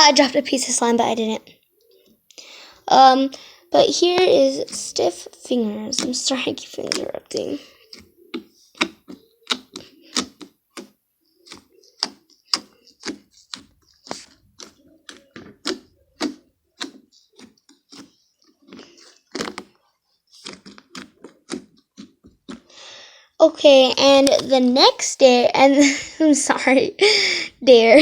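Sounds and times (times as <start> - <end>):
fingers poking squishy slime: 5.9 - 22.7.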